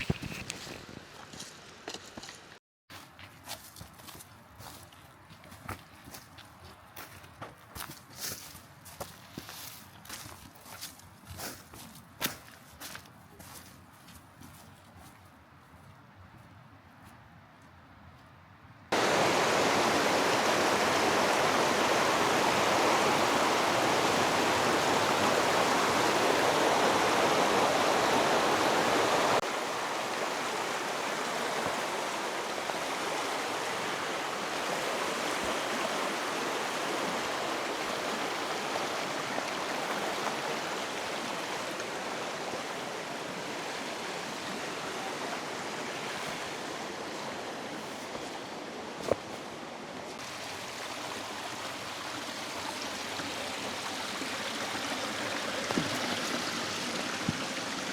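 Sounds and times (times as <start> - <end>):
river water rushing over rocks: 18.9 - 57.9.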